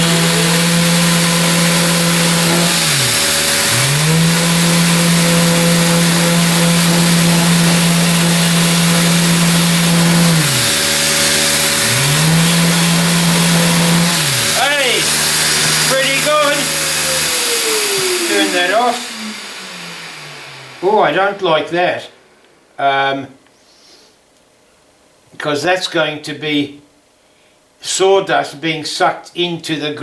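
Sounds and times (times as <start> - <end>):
vacuum pump motor running: 0.0 - 22.3.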